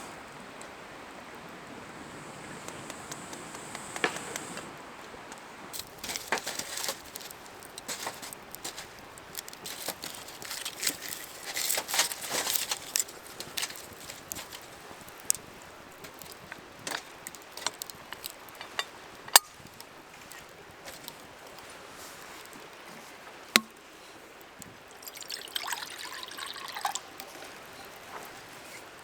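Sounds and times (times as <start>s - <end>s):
liquid pouring into container: 24.9s - 28.4s.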